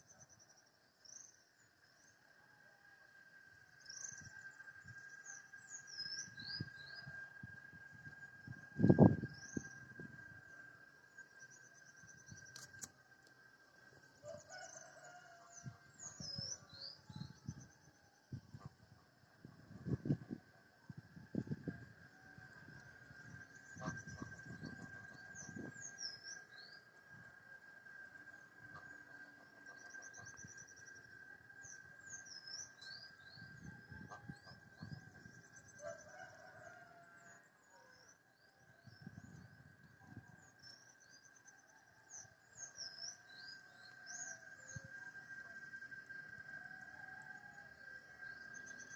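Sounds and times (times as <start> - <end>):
steady high-pitched hum: 0.0 - 36.4, 37.0 - 48.9
rooster crowing: 14.2 - 16.2, 35.8 - 37.5.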